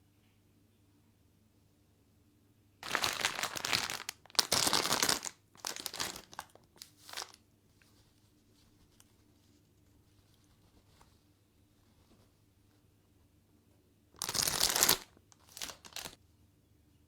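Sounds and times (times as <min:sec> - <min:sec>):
plastic packaging crinkling: 0:02.8 - 0:07.4, 0:14.2 - 0:16.2.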